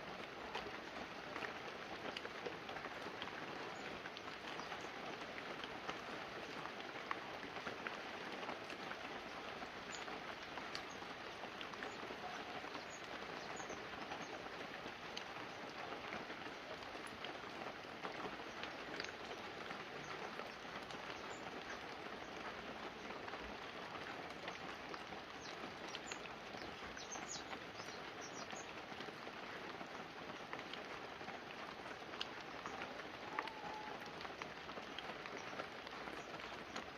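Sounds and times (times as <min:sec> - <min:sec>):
light rain on leaves and roof: 0:00.0 - 0:36.9.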